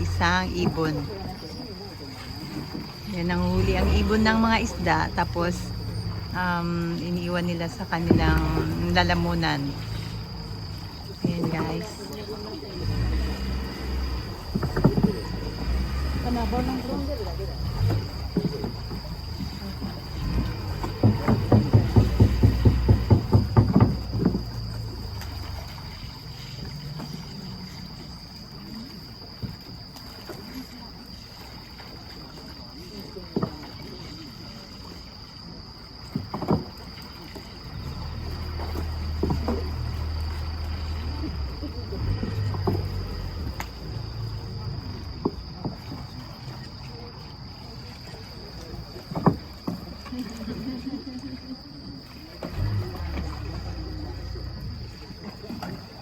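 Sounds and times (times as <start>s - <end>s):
high insect-like tone: 0.0s - 56.0s
short sharp knocks: 20.8s - 24.5s.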